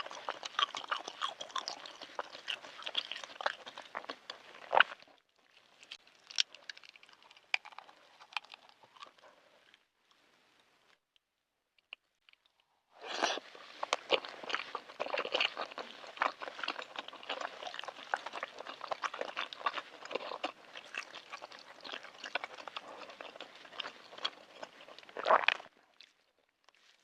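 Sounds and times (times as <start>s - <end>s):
close chewing with wet mouth clicks: 0.0s - 9.8s, 11.8s - 27.0s.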